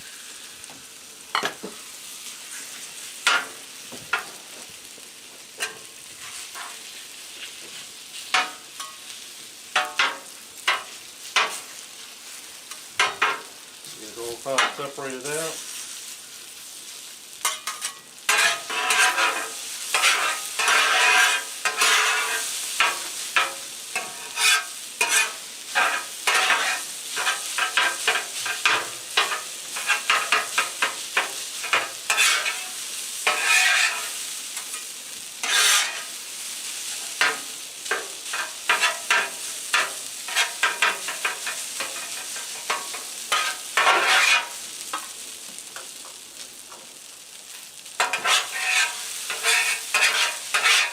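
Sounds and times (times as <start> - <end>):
chicken sizzling on griddle: 0.0 - 50.9
spatulas scraping metal griddle: 5.6 - 9.2, 9.8 - 12.0, 14.2 - 16.2, 17.4 - 45.2, 47.8 - 50.9.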